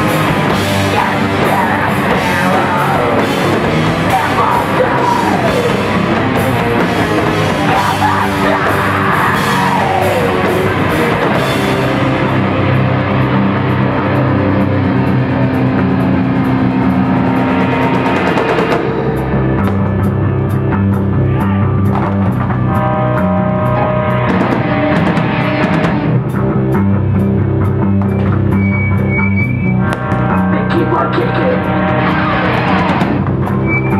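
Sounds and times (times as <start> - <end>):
punk band playing loud: 0.0 - 33.9.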